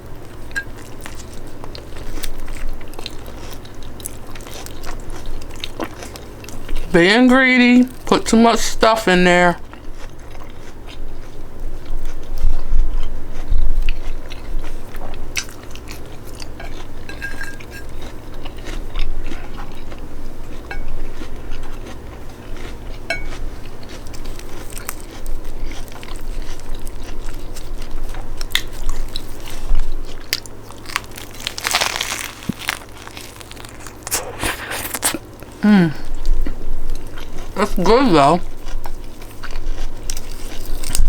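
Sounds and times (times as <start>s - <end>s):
lettuce crunching while chewing: 0.2s - 41.0s
wet mouth clicks: 33.8s - 35.2s.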